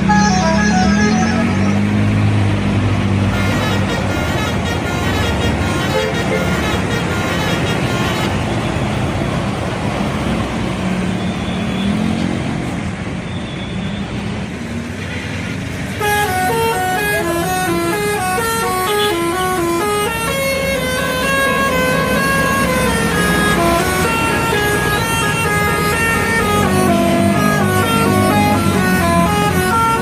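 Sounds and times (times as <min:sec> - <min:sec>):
tuned air horns playing a tune: 0:00.0 - 0:02.0, 0:03.3 - 0:08.3, 0:16.0 - 0:30.0
bus engine and road noise: 0:00.0 - 0:30.0.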